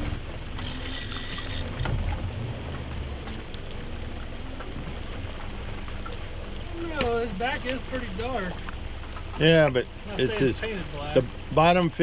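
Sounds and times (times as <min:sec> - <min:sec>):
water hissing: 0:00.0 - 0:01.8
low rumble: 0:01.7 - 0:10.0.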